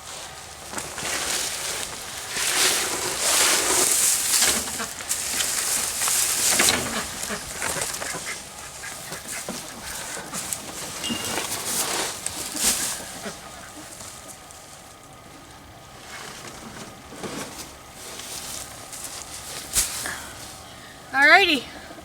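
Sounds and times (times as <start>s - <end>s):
rustling and crunching: 0.0s - 20.7s
ducks and poultry calling: 0.1s - 17.5s.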